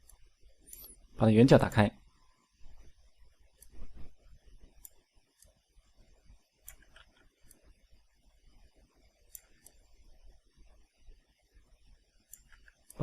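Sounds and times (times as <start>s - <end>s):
low hum: 2.0s - 13.0s
computer mouse clicks: 3.6s - 4.2s, 4.8s - 5.6s, 6.6s - 7.7s, 9.3s - 9.9s, 12.3s - 13.0s.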